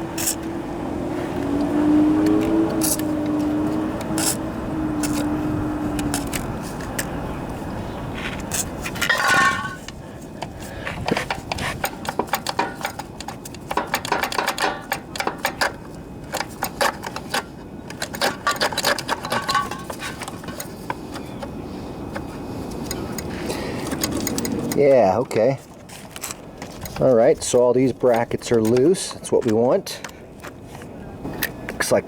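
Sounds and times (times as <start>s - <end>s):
tools clinking on metal frame: 9.0s - 9.9s, 11.2s - 20.7s.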